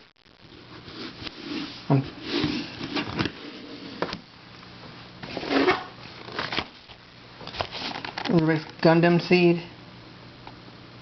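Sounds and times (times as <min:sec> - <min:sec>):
puzzle pieces scraping and rustling: 0:07.5 - 0:08.7.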